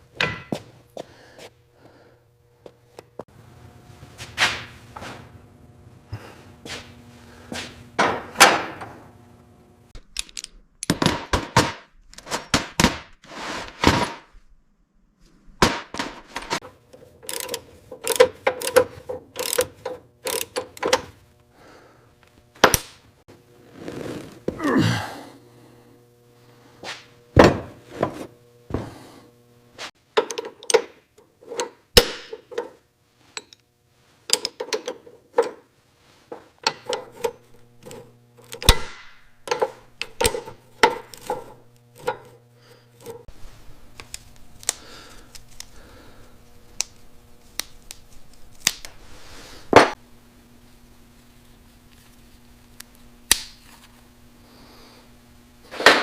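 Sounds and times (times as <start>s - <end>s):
tool knocks and clinks: 0.2s - 0.7s
faint steady hum: 15.5s - 55.7s.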